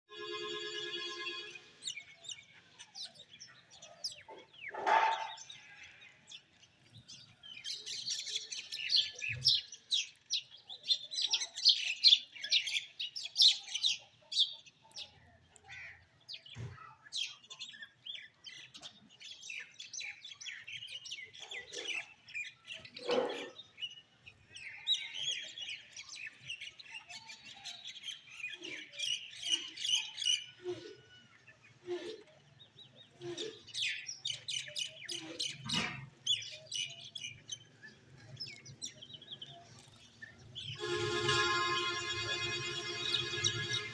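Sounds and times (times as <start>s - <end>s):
birds chirping and chattering: 1.4s - 43.9s
loud low bird calls: 27.3s - 43.9s.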